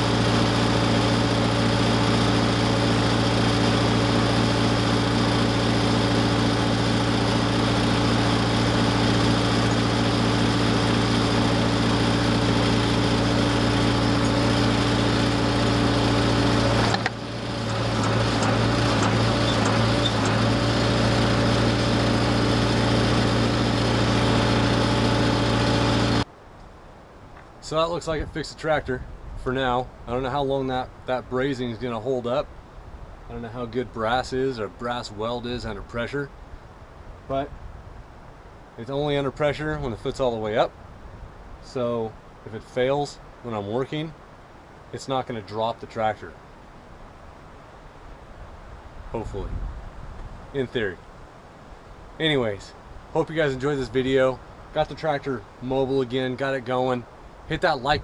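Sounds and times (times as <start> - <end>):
backhoe engine running: 0.0 - 26.3.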